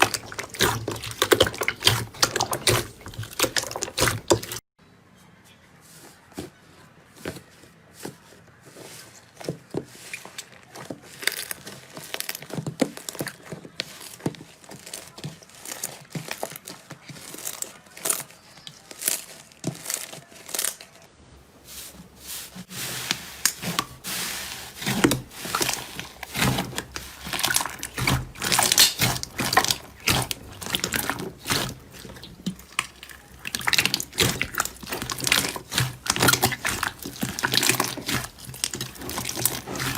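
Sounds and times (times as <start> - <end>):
slime squeezed crackling: 0.0 - 4.6, 10.0 - 21.1, 22.3 - 39.9.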